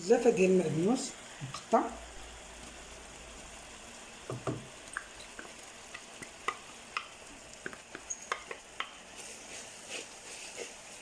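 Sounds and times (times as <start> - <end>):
faint sizzle: 0.0 - 11.0
utensil scraping frying pan: 7.9 - 11.0.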